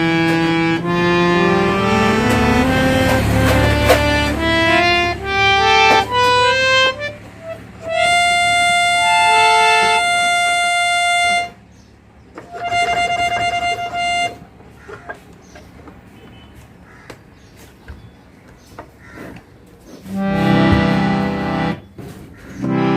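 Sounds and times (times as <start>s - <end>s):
harmonium playing: 0.0s - 15.1s, 20.1s - 22.9s.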